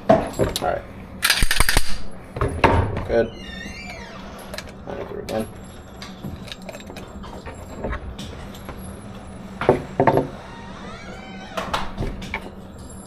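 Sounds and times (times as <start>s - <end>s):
pistol clicks and rattles: 1.2s - 2.2s.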